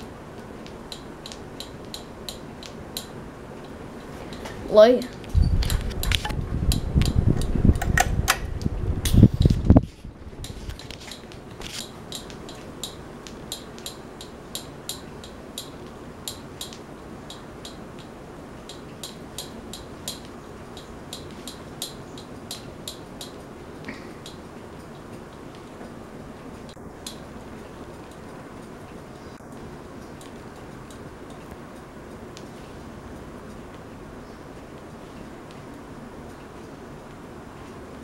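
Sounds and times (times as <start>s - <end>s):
ceiling fan humming: 0.0s - 38.0s
fan ticking: 0.0s - 38.0s.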